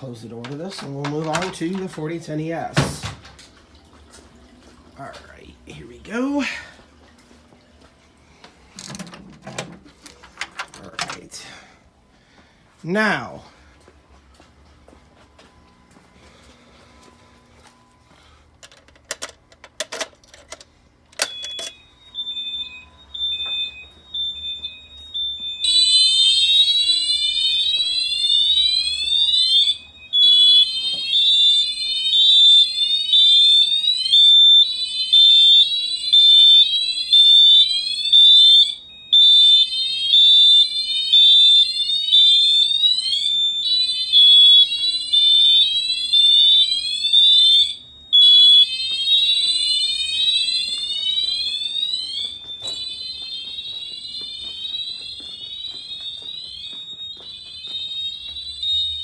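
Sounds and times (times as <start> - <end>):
fire alarm sweep tones: 0.0 - 3.2, 21.2 - 59.0.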